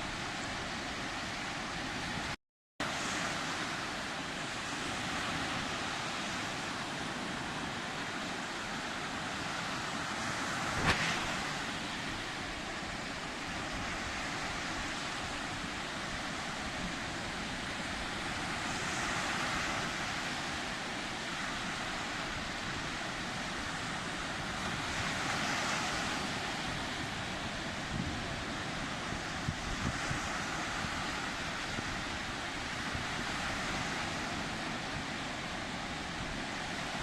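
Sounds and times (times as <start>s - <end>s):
sea waves breaking: 0.0s - 37.0s
wind buffeting microphone: 21.2s - 37.0s.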